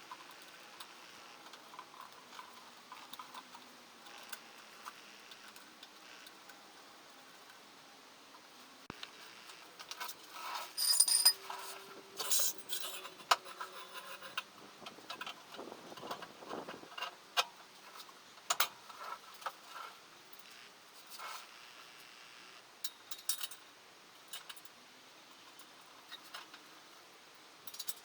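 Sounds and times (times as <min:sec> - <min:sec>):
metal tools clinking: 0:10.6 - 0:13.1
ringing metallic clink: 0:10.8 - 0:11.5.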